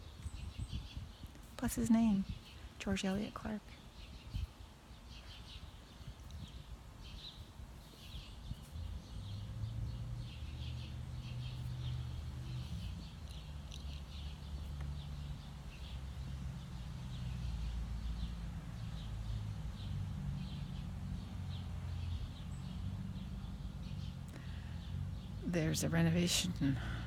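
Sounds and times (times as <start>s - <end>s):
small birds chirping: 0.0s - 27.0s
low truck engine hum: 8.6s - 27.0s.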